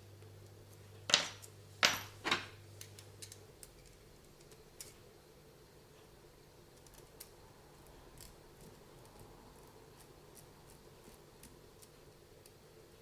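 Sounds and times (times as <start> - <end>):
small parts clicking: 2.8 - 5.0.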